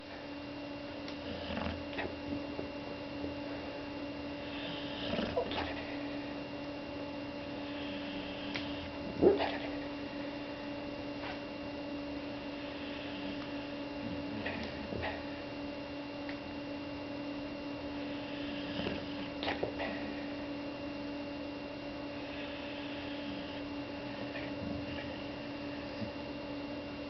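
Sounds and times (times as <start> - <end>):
steady electrical hum: 0.0 - 27.0
dog snoring: 1.1 - 2.6, 4.3 - 6.4, 7.4 - 9.9, 12.3 - 15.4, 17.9 - 20.4, 22.1 - 26.3.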